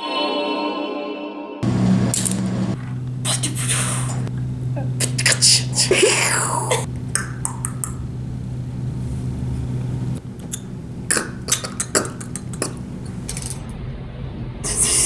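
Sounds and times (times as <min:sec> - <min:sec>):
steady low hum: 0:01.6 - 0:15.0
sharp clicks and clinks: 0:12.3 - 0:13.7.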